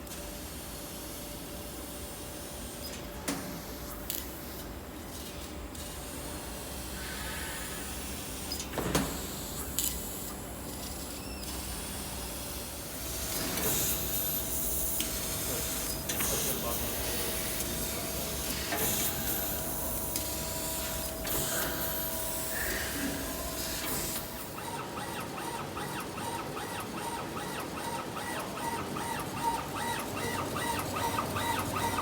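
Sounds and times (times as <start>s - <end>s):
laser machine hissing: 13.1s - 24.8s.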